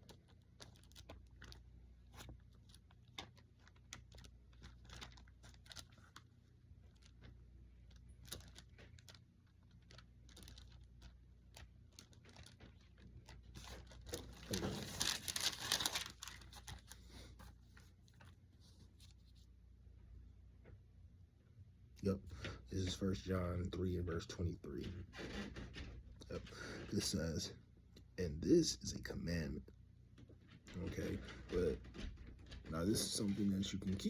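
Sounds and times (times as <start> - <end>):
paper pages rustling: 0.0 - 19.5, 32.6 - 34.0.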